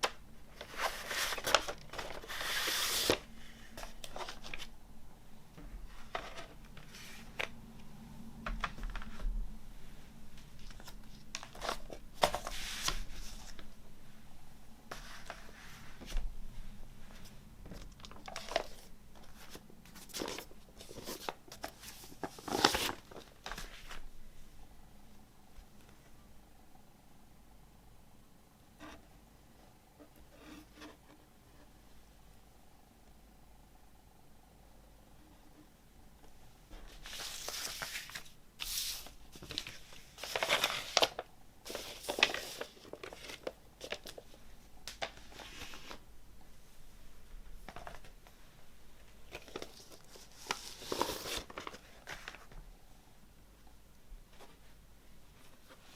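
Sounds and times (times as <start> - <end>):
packaging rustling and crinkling: 0.5 - 4.7, 17.2 - 24.0, 36.8 - 46.0, 49.2 - 52.7
packaging crinkling: 37.1 - 44.3.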